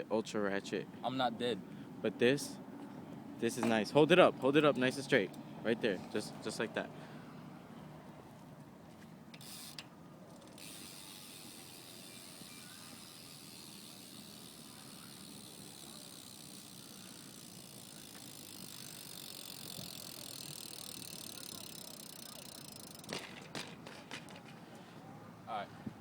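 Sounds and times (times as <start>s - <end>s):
bike hub ratchet whirring: 9.3s - 23.7s.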